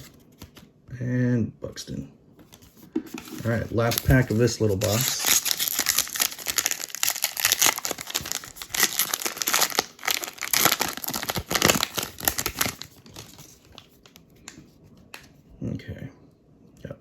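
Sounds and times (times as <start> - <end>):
wrapper crinkling and tearing: 3.3 - 14.2.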